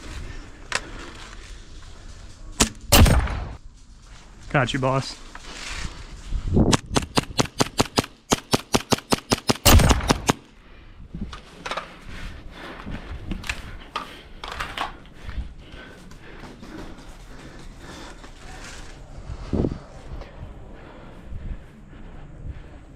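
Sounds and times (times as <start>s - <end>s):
faint airsoft shots: 6.7s - 10.4s
airsoft rifle firing bursts: 6.8s - 10.4s.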